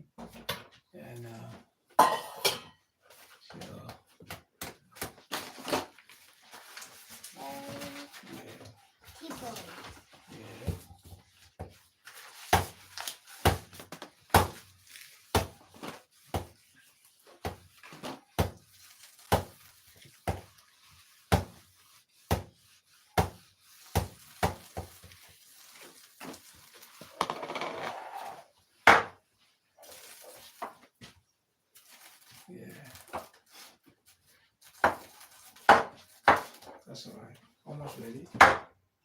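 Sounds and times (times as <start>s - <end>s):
scraping or rustling: 14.0s - 28.6s.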